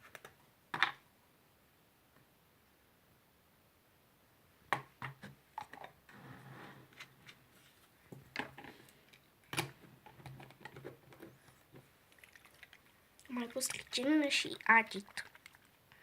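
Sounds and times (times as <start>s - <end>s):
plastic bottle clicks and knocks: 4.7s - 5.9s.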